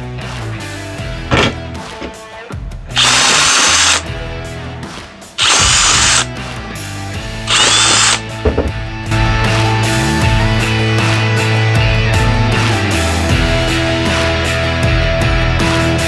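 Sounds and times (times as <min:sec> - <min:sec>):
electric drill boring through wood: 0:03.0 - 0:04.0, 0:05.4 - 0:06.3, 0:07.5 - 0:08.2.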